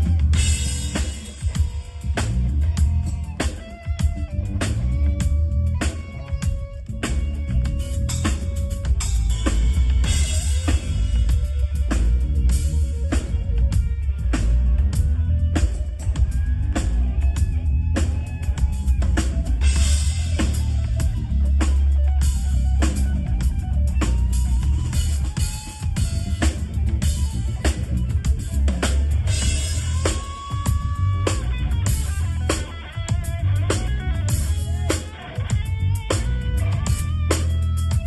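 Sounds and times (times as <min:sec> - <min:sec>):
bass line: 0:00.0 - 0:38.0
live band music: 0:00.0 - 0:38.0.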